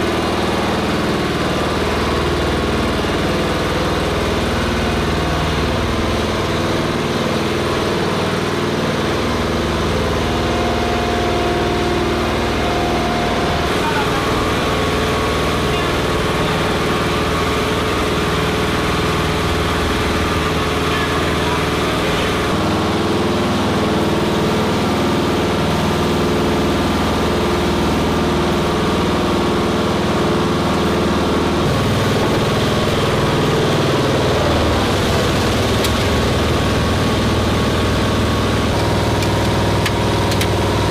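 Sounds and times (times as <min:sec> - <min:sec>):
engine idling: 0:00.0 - 0:40.9
voices: 0:12.7 - 0:16.6.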